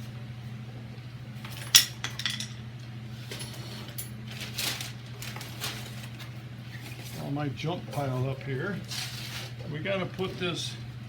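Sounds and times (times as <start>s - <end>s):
metal tools clinking: 1.5s - 2.6s.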